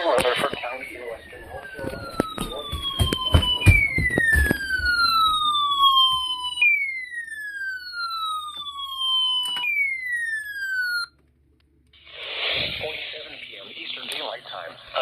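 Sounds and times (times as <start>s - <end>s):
siren tone sweeping downward: 0.6s - 11.1s.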